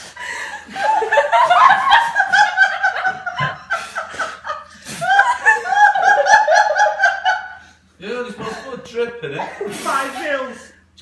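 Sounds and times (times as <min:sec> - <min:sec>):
people laughing hard: 0:00.1 - 0:07.7.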